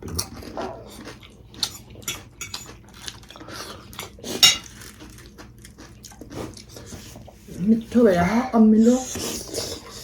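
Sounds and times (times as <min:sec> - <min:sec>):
cutlery scraping dishes: 0:01.6 - 0:02.8, 0:04.0 - 0:04.8.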